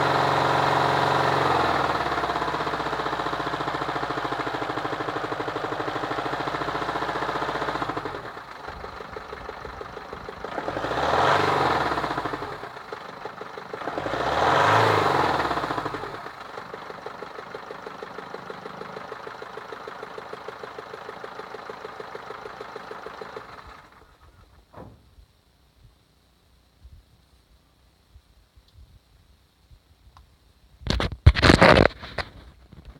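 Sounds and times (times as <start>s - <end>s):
car engine idling and revving: 0.0s - 25.0s.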